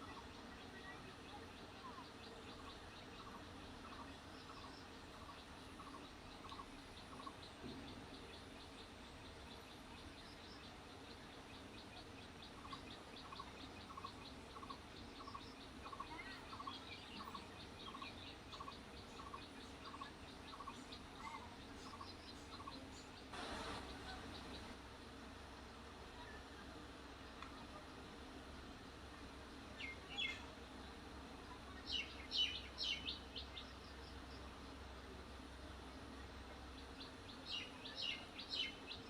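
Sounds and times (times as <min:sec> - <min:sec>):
bird chirping: 0:00.0 - 0:24.8, 0:31.7 - 0:34.4
faint low hum: 0:00.0 - 0:39.0.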